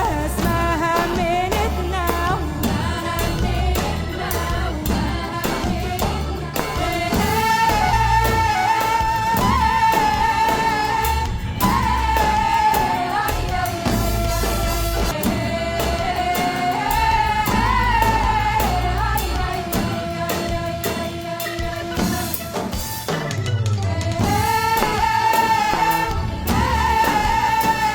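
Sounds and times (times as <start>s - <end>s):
low beat: 24.2s - 27.9s.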